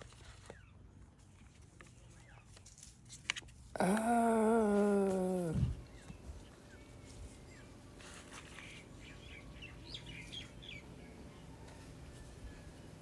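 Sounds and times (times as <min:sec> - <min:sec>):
low background hum: 0:00.0 - 0:13.0
faint bird chirps: 0:04.7 - 0:13.0.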